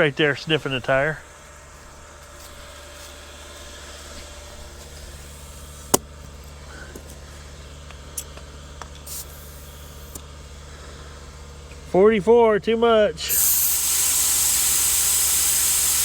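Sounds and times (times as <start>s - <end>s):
low mechanical hum: 0.0s - 16.0s
short hiss of air: 9.1s - 10.2s, 13.3s - 16.0s.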